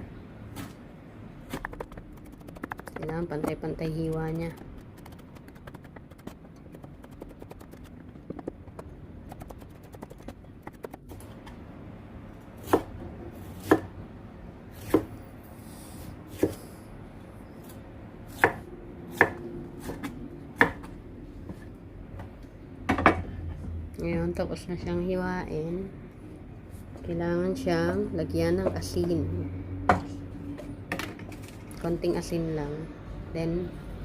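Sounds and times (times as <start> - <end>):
knife slicing peppers: 1.5 - 11.2.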